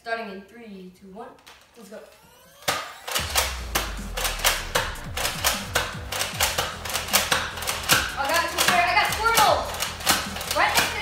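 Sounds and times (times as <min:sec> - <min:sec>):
toy blaster firing darts: 0:02.2 - 0:11.0
steady low hum: 0:03.1 - 0:07.8.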